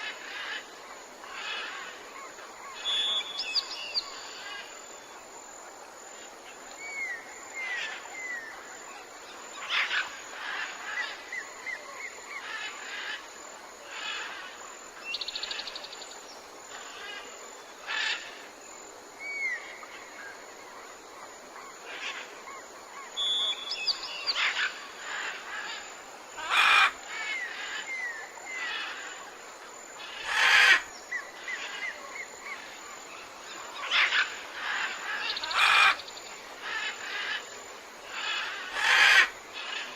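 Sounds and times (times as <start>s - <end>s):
jungle birds calling: 0.0s - 4.8s, 19.2s - 39.9s.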